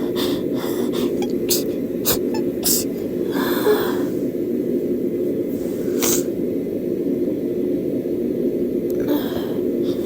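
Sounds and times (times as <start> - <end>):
breathy in-breath: 0.0 - 4.3, 9.0 - 10.0
steady low hum: 0.0 - 10.0
person sneezing: 0.8 - 4.1.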